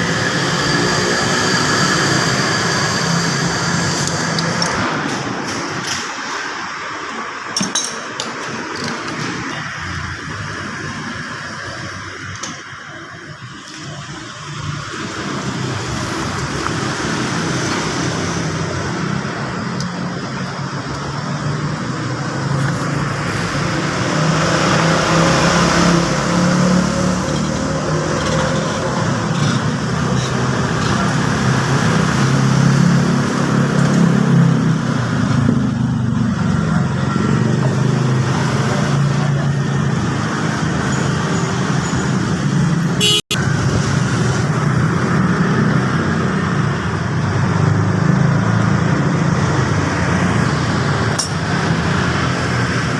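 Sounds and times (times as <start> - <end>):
scooter engine running: 43.0 - 44.9.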